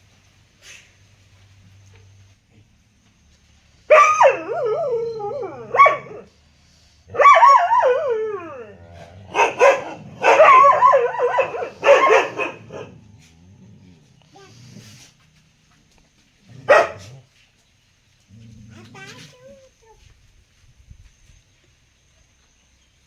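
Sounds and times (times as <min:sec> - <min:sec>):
dog howling: 0:03.9 - 0:06.3, 0:07.1 - 0:13.0
dog barking: 0:05.7 - 0:06.3, 0:09.3 - 0:13.0, 0:16.6 - 0:17.1.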